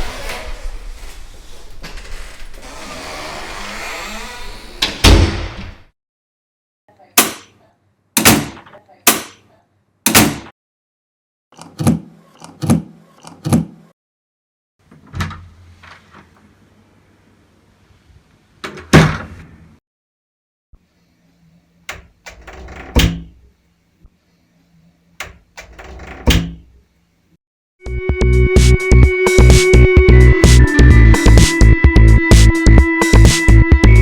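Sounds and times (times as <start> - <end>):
door scraping open: 0.0 - 5.9, 25.6 - 26.6.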